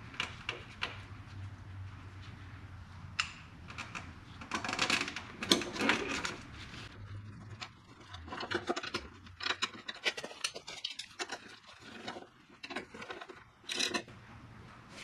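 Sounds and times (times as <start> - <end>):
metal tools clicking and knocking: 8.0 - 14.1.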